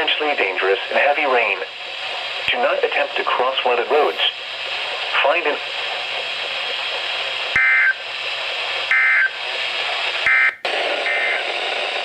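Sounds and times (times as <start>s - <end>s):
radio hiss: 0.0s - 12.0s.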